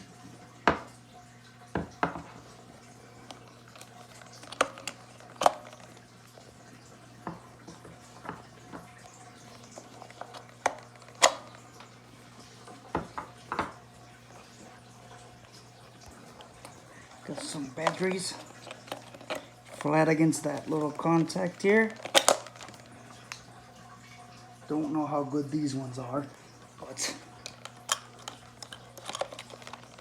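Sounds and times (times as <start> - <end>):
batteries clicking and clacking: 3.3 - 6.5, 7.7 - 12.0, 15.4 - 23.5, 27.0 - 30.0.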